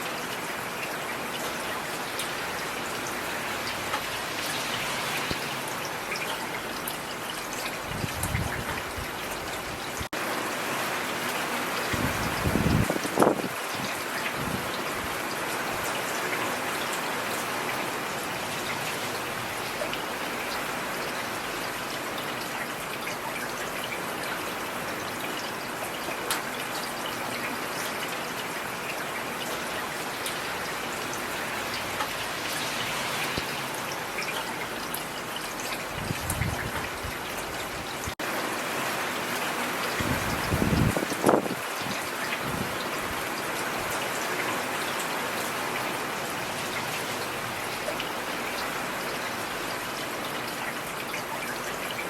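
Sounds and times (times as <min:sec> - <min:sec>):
steady rain falling: 0:00.0 - 0:52.0.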